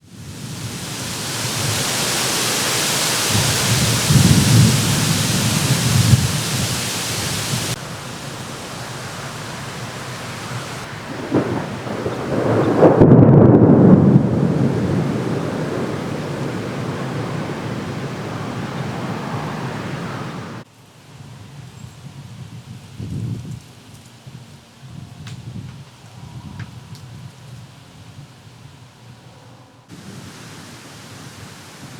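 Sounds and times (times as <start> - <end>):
rain hiss: 0.0 - 26.1, 29.8 - 31.9
low rolls of thunder: 0.2 - 20.6.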